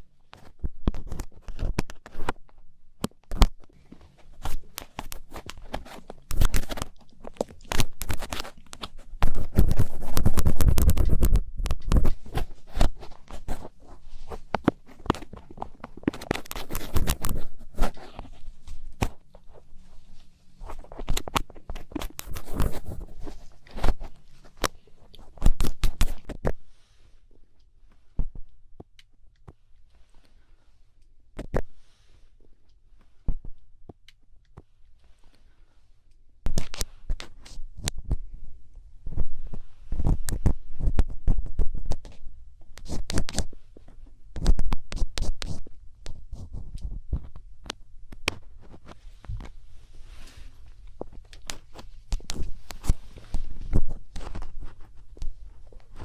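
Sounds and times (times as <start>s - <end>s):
ear pick scraping inside ear: 3.8s - 26.5s.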